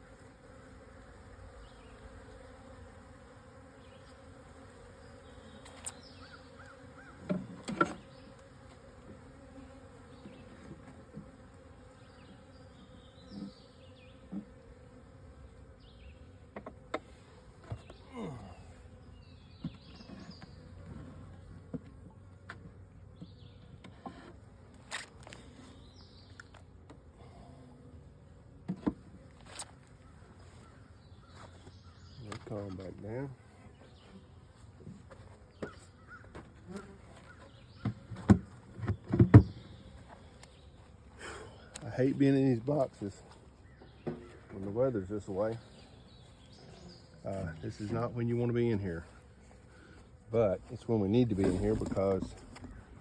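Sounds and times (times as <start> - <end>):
honeybees buzzing: 0.0 - 53.0
knocks and clicks from hive: 7.2 - 9.2, 16.5 - 18.0, 28.6 - 29.1, 34.8 - 39.7, 43.8 - 44.4.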